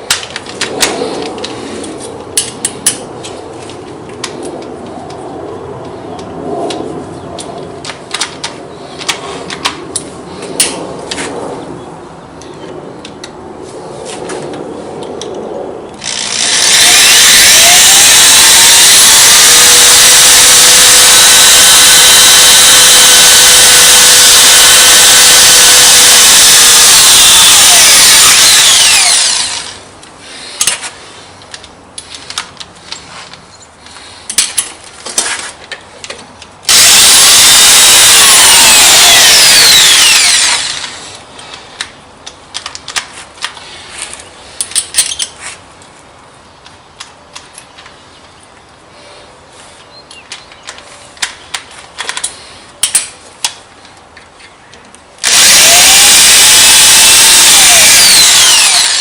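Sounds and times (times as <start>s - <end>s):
electric hand drill drilling: 16.0s - 29.8s, 36.7s - 41.2s, 55.2s - 59.0s.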